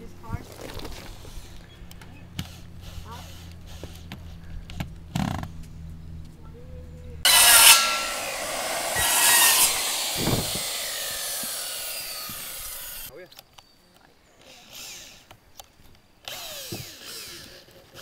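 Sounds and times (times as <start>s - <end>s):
power saw cutting wood: 7.3s - 13.1s.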